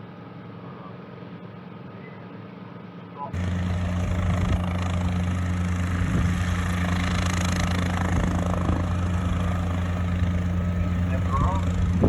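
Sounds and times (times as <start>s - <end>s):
helicopter engine and rotor drone: 3.4s - 12.0s.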